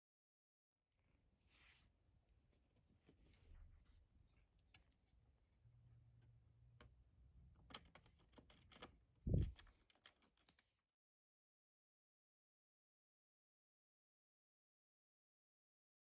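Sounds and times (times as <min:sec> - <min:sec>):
small parts clicking and tapping: 0:06.2 - 0:10.8.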